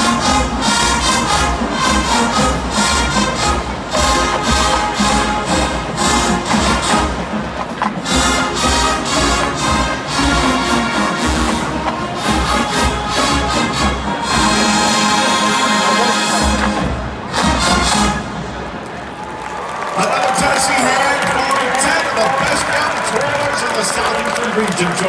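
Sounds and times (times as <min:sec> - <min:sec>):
marching band brass and drums: 0:00.0 - 0:19.5.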